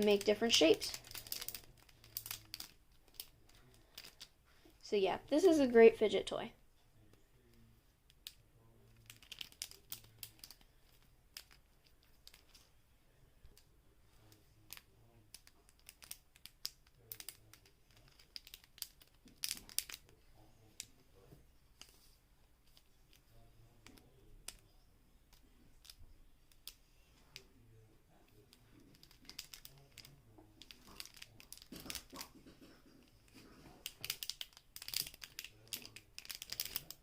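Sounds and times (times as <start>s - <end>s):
plastic fidget toy clicking: 0.0s - 3.3s, 9.0s - 12.6s, 14.7s - 20.1s, 28.9s - 32.2s, 33.8s - 37.0s.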